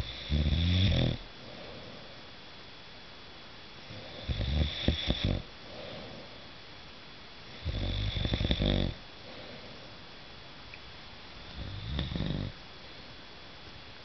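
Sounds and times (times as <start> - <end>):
loud rattling snores: 0.0 - 1.2, 4.0 - 5.5, 7.6 - 9.0, 11.6 - 12.5
quiet breathing: 0.0 - 2.5, 3.8 - 6.7, 7.4 - 10.2.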